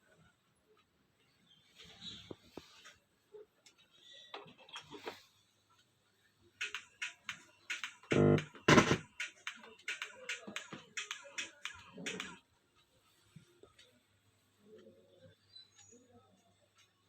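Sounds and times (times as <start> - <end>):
choppy music bursts: 8.1 - 9.0
faint low hum: 8.1 - 9.0.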